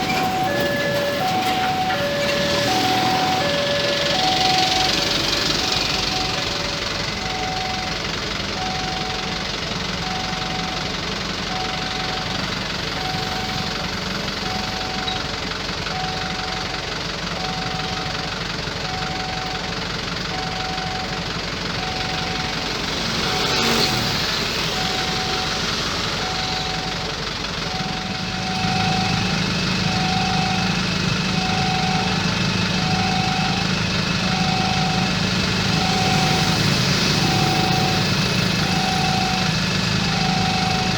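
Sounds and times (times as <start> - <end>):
engines running: 0.0 - 40.9
level crossing warning beeps: 0.0 - 40.9
loud engine: 0.0 - 40.9
vehicle passing: 22.5 - 26.3.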